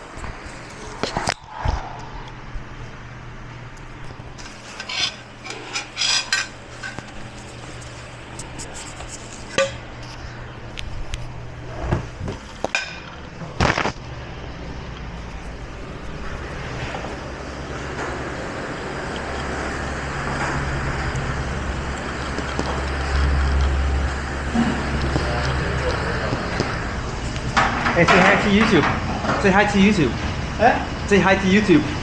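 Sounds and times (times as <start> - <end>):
dishes and utensils clinking: 4.4 - 9.8.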